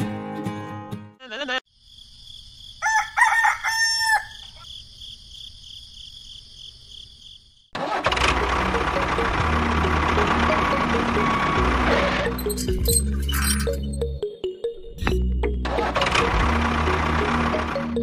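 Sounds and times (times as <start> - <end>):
rooster crowing: 2.8 - 4.7
loud engine-like machine: 7.8 - 13.0, 15.5 - 18.0.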